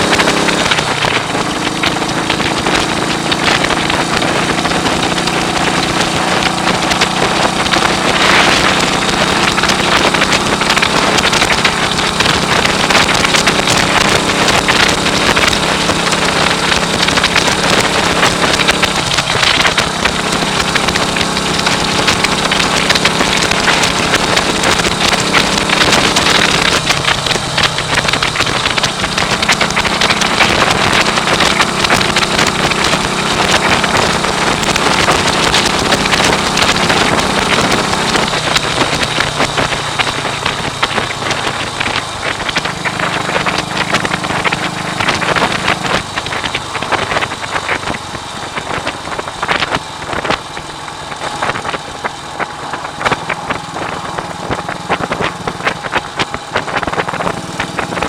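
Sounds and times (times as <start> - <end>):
single-cylinder engine running: 0.0 - 58.0.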